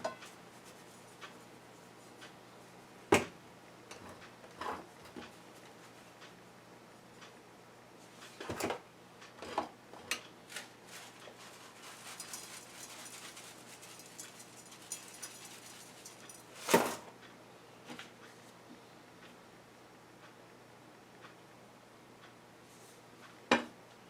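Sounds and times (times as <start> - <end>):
seasoning shakers rattling: 10.5 - 17.0.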